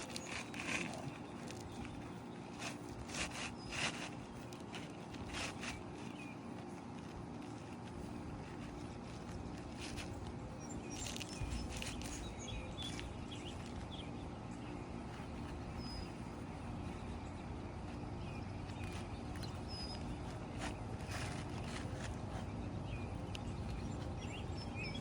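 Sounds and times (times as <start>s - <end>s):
knocks and scrapes on roof shingles: 0.0s - 6.1s
outdoor background hum: 0.0s - 25.0s.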